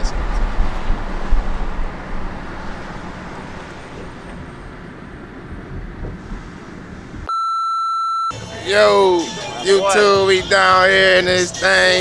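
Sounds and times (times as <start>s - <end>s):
vehicle road noise rumble: 0.0s - 7.3s.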